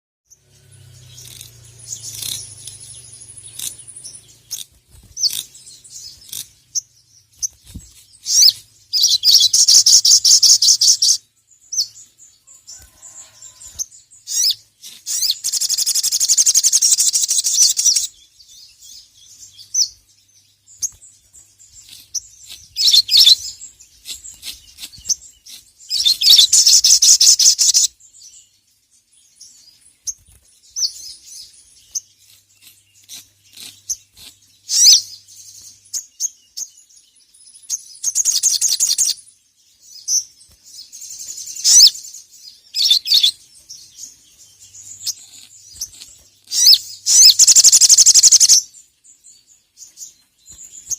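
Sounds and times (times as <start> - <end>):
bird sharp chirps: 0.3 - 50.9
bird chattering trills: 0.5 - 12.0, 13.0 - 18.2, 21.7 - 28.0, 31.8 - 35.2, 38.0 - 39.2, 41.3 - 43.4, 44.0 - 48.7.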